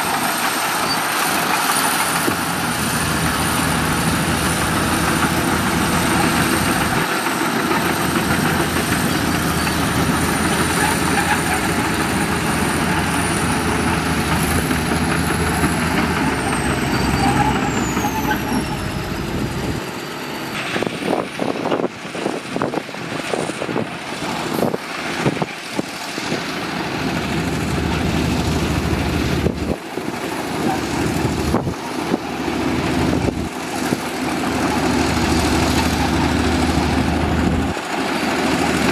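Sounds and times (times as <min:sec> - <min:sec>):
heavy diesel machinery running: 0:00.0 - 0:38.9.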